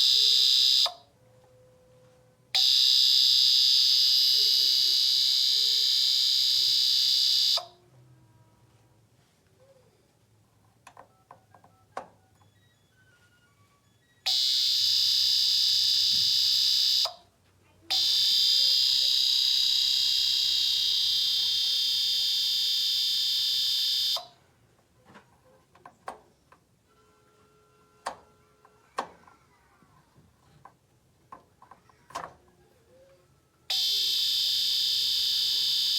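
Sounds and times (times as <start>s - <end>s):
shrill alarm-like tone: 0.0s - 1.1s, 2.6s - 7.8s, 14.2s - 17.2s, 17.9s - 24.4s, 33.7s - 35.9s.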